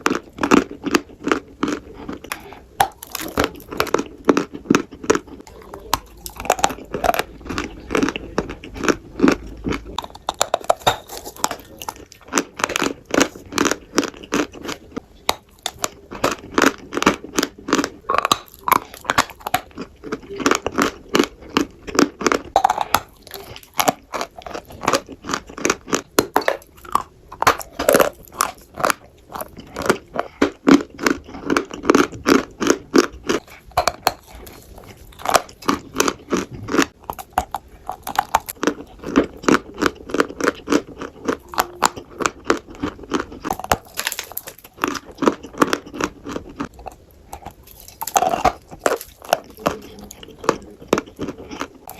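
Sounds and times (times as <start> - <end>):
chewing crunchy food: 0.0 - 51.9.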